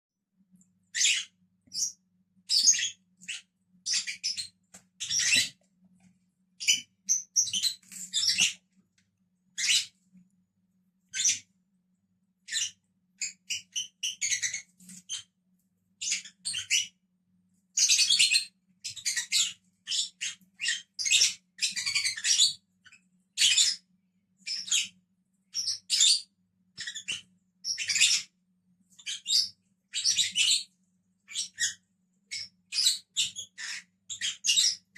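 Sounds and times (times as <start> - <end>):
lovebirds chirping: 0.9 - 5.6, 6.5 - 8.6, 9.6 - 10.0, 11.1 - 11.5, 12.5 - 15.3, 16.0 - 17.0, 17.8 - 22.6, 29.0 - 34.9.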